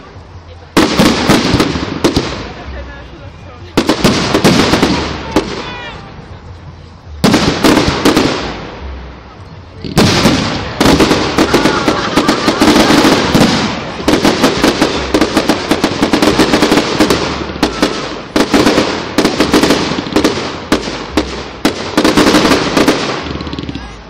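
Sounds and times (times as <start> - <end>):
fireworks bangs and crackles: 0.0 - 24.0.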